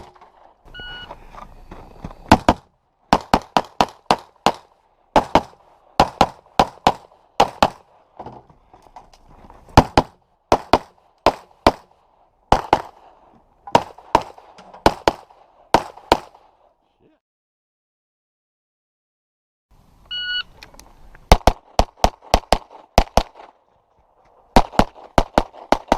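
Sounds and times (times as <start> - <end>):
pistol shots: 2.3 - 8.0, 9.8 - 11.9, 12.5 - 13.1, 13.7 - 16.5, 21.3 - 23.6, 24.6 - 25.9.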